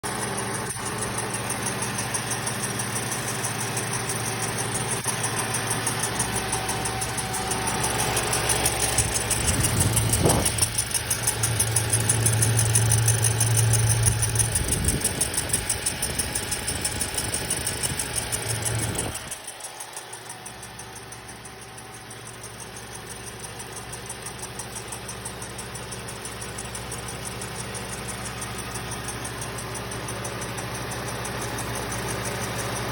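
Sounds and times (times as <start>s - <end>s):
car engine idling: 0.1s - 32.9s
fast even ticking: 3.6s - 20.9s.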